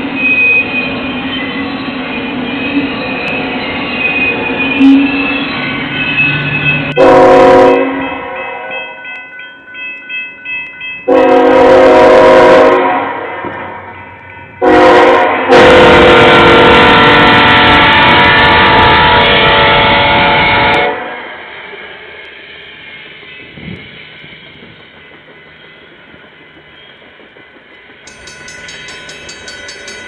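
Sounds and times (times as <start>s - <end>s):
locomotive air horn blasts: 4.8s - 5.2s, 6.9s - 8.7s, 11.1s - 13.8s, 14.6s - 21.3s.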